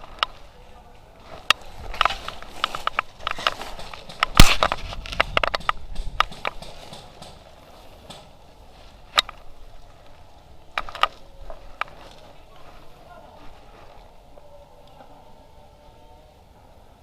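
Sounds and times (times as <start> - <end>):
sharp clicks and snaps: 1.4 - 7.4.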